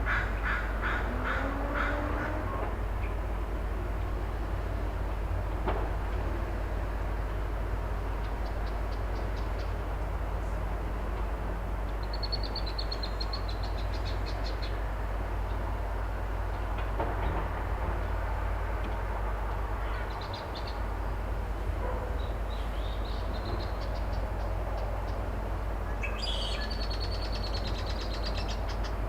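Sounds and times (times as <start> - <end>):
excavator engine rumble: 0.0 - 29.0
small birds chirping: 8.1 - 9.9, 11.9 - 14.9, 22.1 - 29.0.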